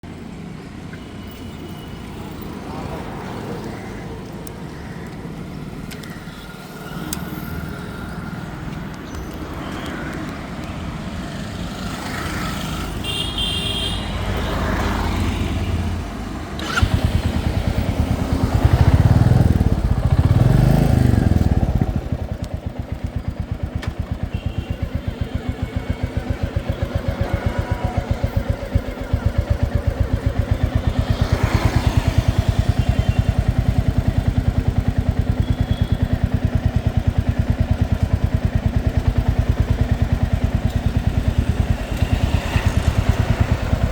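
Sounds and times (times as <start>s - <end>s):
motorcycle engine pulsing: 16.6s - 43.9s.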